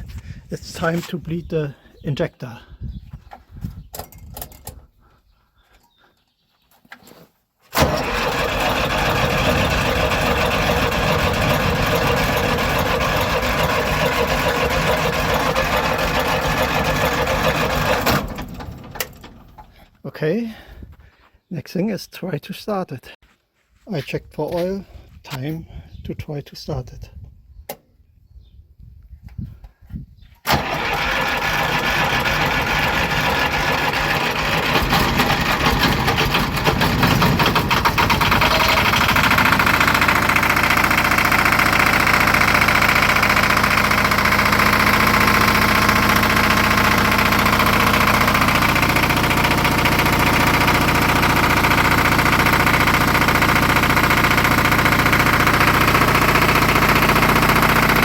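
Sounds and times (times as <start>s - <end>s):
diesel generator engine running: 7.7s - 19.9s, 30.5s - 58.0s.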